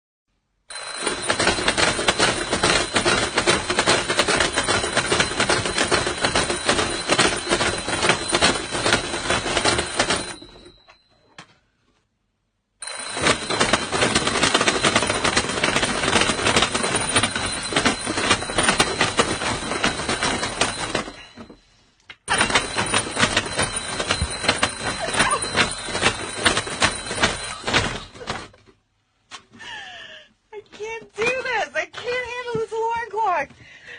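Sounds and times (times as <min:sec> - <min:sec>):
alarm clock ringing: 0:00.7 - 0:11.4, 0:12.8 - 0:28.6.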